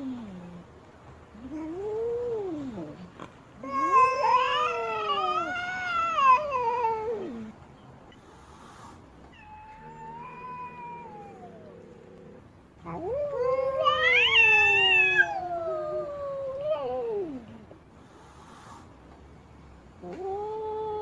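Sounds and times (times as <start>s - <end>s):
cat yowling: 3.6s - 7.5s, 9.3s - 12.3s, 12.9s - 17.5s.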